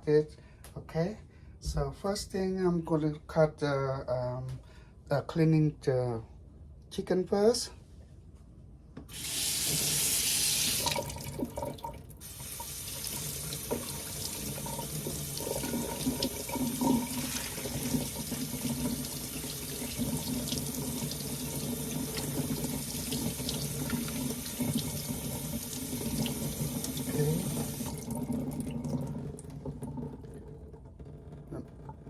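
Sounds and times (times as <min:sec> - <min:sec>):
tap water running into sink: 0:09.1 - 0:32.0.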